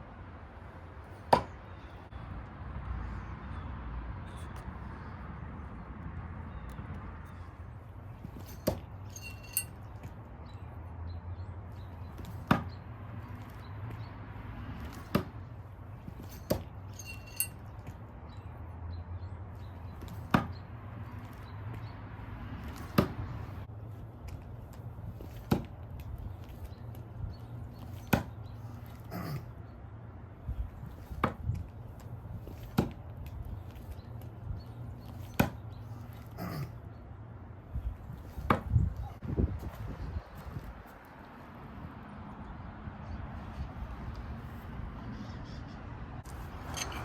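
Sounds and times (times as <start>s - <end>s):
throwing knives striking target: 8.2s - 10.1s, 12.2s - 12.7s, 14.8s - 18.0s, 22.6s - 23.5s, 25.1s - 26.7s, 27.8s - 29.4s, 32.4s - 33.9s, 35.0s - 36.7s
metallic clink and ring: 8.4s - 9.8s, 16.2s - 17.7s, 46.5s - 47.0s.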